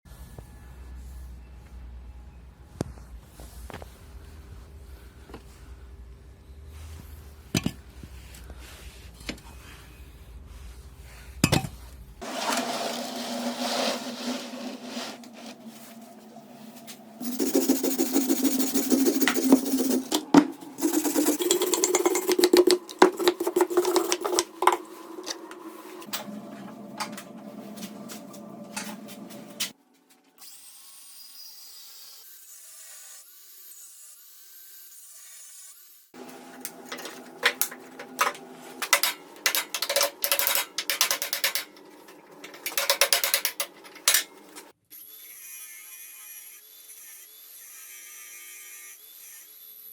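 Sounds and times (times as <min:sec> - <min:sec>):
tools rasping on wood: 0:17.2 - 0:20.2, 0:20.8 - 0:25.5.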